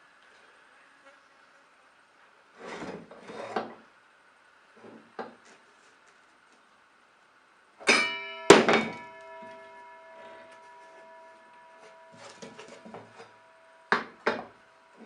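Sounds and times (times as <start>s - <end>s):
metal object struck ringing: 7.8s - 15.0s.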